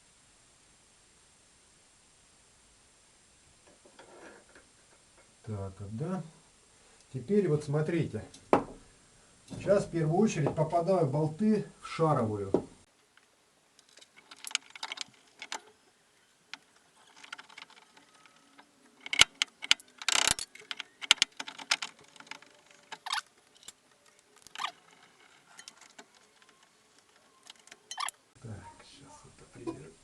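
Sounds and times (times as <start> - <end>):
metal clinks of bolts and parts: 13.8 - 15.7, 17.0 - 23.8, 24.5 - 28.2.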